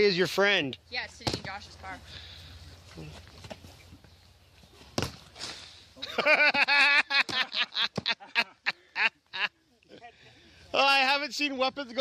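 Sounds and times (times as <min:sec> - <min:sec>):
person laughing loudly: 0:06.0 - 0:09.5.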